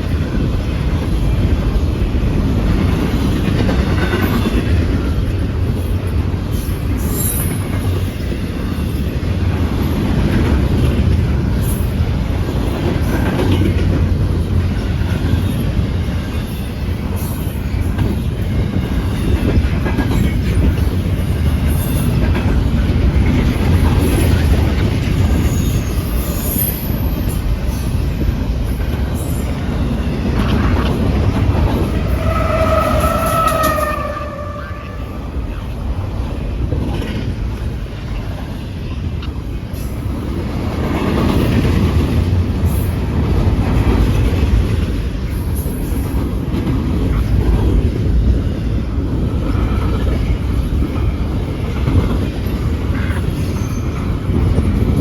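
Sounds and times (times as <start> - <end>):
train wheels rumbling on rail: 0.0 - 55.0
high wheel squeals: 31.5 - 35.6.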